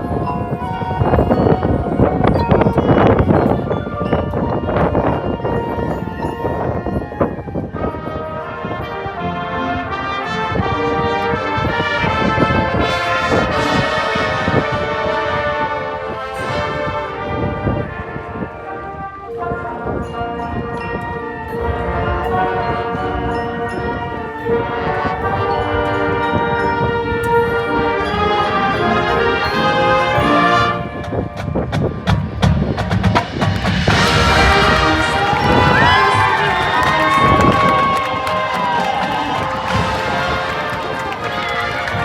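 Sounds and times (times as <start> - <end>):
brass sustained chords: 7.6 - 31.7, 33.3 - 42.0
marching percussion: 28.0 - 42.0
crowd cheering: 33.1 - 42.0.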